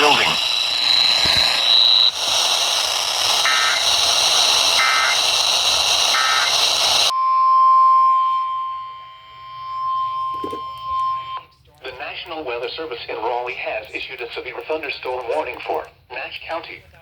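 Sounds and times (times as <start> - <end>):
buzzy digital data bursts: 0.0 - 7.1
radio static: 0.0 - 7.1.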